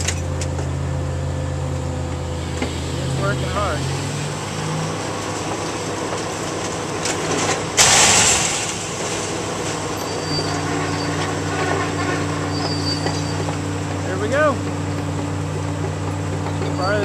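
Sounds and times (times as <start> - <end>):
crane engine running under load: 0.0 - 17.0
loud burst of rushing noise: 7.8 - 9.7.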